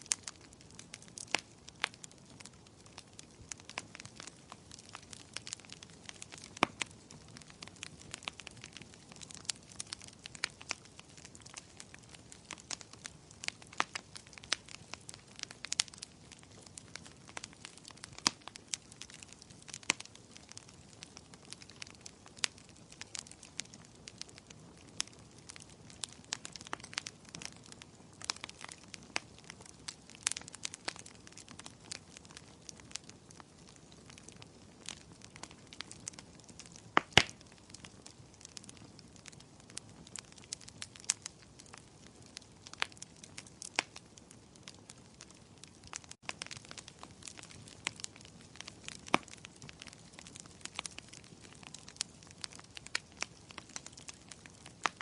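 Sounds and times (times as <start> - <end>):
firewood crackling: 0.0 - 55.0.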